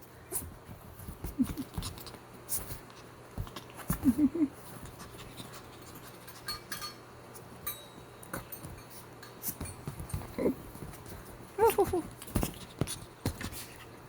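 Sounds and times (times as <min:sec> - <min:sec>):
small clicks and scuffs: 0:08.2 - 0:14.0.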